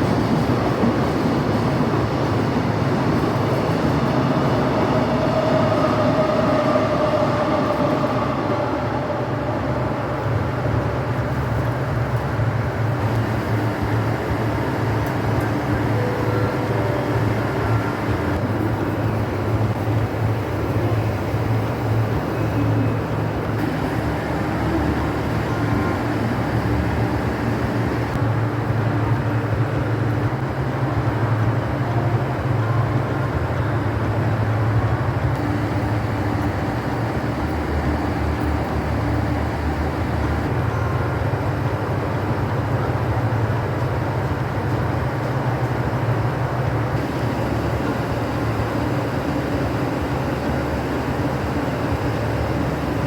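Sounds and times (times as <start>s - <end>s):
diesel engine drone: 0.0s - 53.0s.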